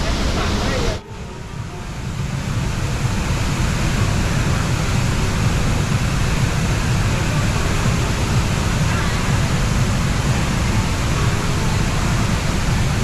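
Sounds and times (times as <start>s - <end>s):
waterfall roaring: 0.0s - 13.0s.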